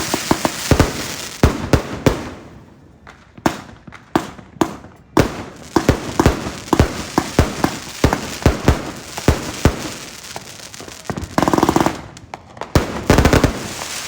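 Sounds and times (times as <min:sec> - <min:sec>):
firework cake bangs: 0:03.3 - 0:14.0.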